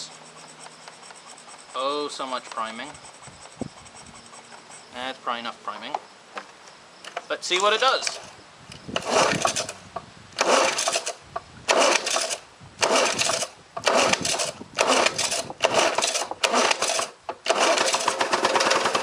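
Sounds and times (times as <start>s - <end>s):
recoil starter yanked: 5.8s - 9.8s, 10.4s - 19.0s
mower engine turning over: 7.0s - 9.8s, 10.4s - 19.0s.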